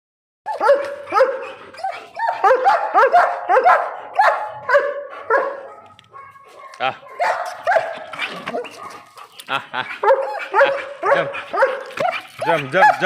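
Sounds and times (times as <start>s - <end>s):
dog barking: 0.5s - 9.2s, 10.0s - 13.0s.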